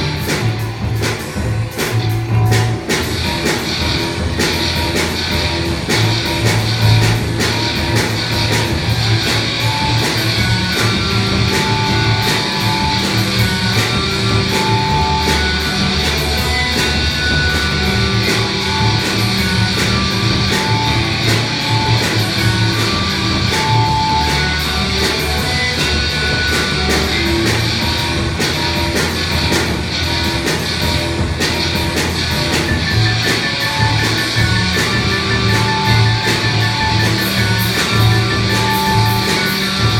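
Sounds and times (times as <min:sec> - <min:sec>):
fast drum beat: 0:00.0 - 0:39.9
rock guitar: 0:00.0 - 0:39.9.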